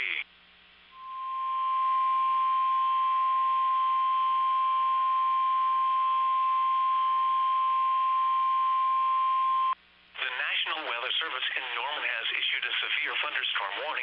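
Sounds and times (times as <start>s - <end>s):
faint radio hiss: 0.0s - 2.8s, 8.4s - 14.0s
steady alarm tone: 0.9s - 9.8s.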